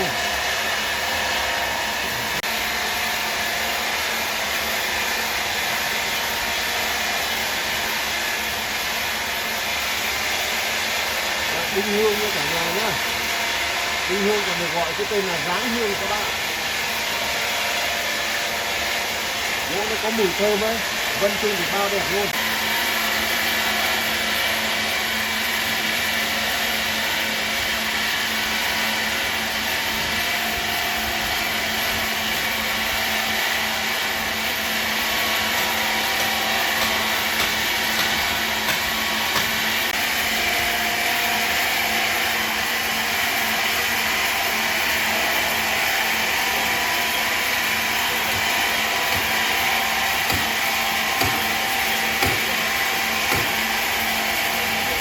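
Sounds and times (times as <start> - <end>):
woodworking machine whining: 0.0 - 55.0.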